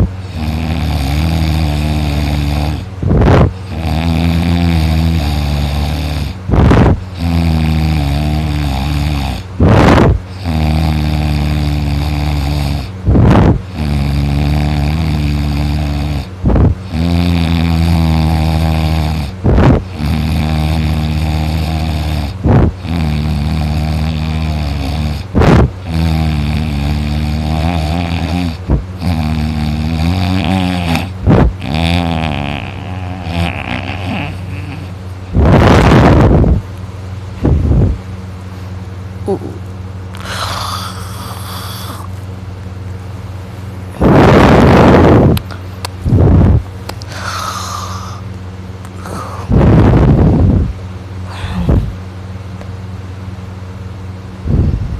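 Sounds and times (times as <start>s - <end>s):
man snoring: 0.0s - 36.6s, 39.2s - 39.6s, 40.2s - 42.2s, 43.9s - 45.4s, 46.1s - 48.3s, 48.9s - 52.0s
man moaning: 39.2s - 42.1s, 51.3s - 52.0s.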